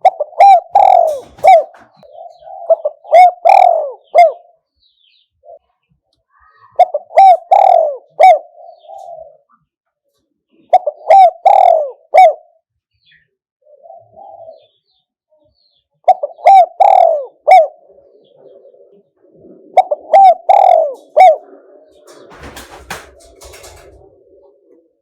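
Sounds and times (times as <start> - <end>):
dove cooing: 0.0 - 4.6, 6.6 - 9.6, 10.5 - 12.6, 13.6 - 14.8, 16.0 - 25.0.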